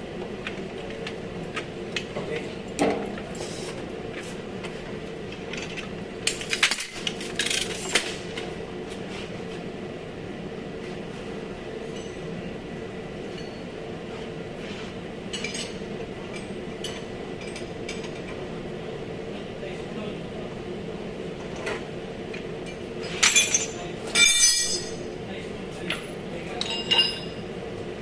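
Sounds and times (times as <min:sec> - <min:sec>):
steady background hum: 0:00.0 - 0:28.0
metal tools clinking: 0:23.1 - 0:24.9, 0:26.6 - 0:27.4.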